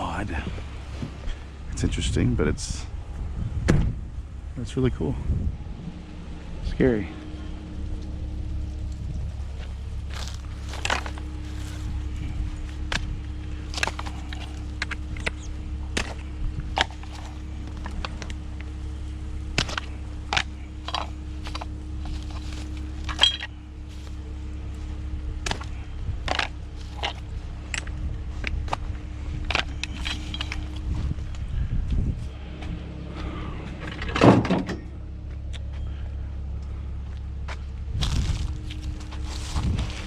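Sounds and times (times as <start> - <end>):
steady low hum: 0.0 - 40.0
junk being handled and shifted: 9.6 - 24.6, 25.4 - 31.5, 33.7 - 34.9.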